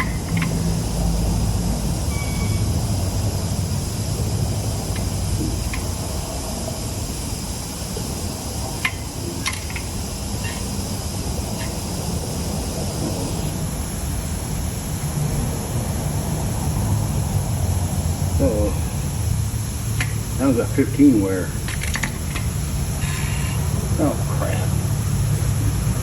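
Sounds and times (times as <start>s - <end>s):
low mechanical drone: 0.0s - 26.0s.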